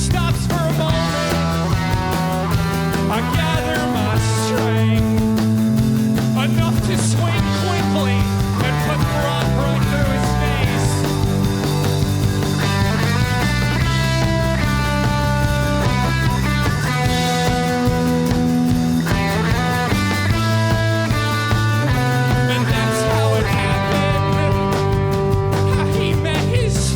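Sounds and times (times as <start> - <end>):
live rock band playing: 0.0 - 26.9.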